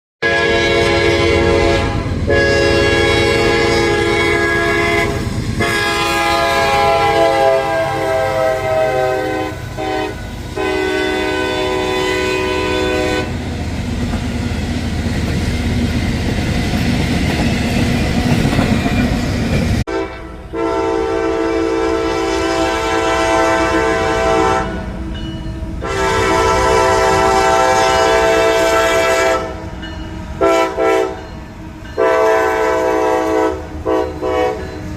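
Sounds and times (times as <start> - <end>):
locomotive air horn blasts: 0.2 - 13.4, 19.9 - 25.1, 25.8 - 29.8, 30.4 - 31.2, 32.0 - 34.8
passing train rumble and clatter: 0.2 - 34.9.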